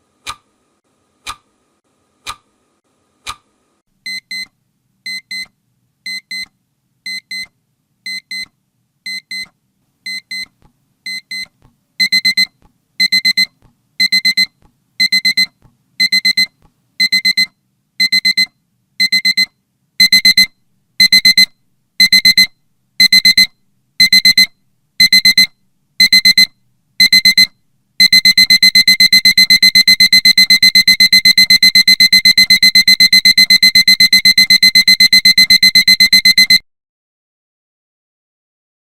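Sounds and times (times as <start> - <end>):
alarm clock beeping: 19.0 - 36.6.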